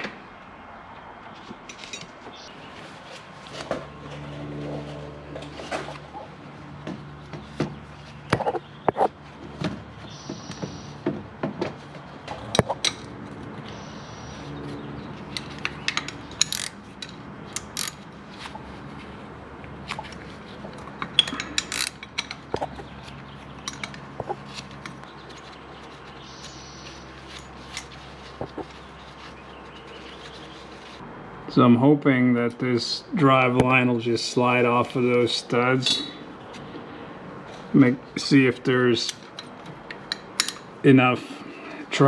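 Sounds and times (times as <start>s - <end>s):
metal tool clicks and clinks: 15.4s - 18.0s, 21.0s - 22.4s, 39.1s - 40.6s
ratchet clicking: 15.6s - 18.0s, 21.2s - 22.4s.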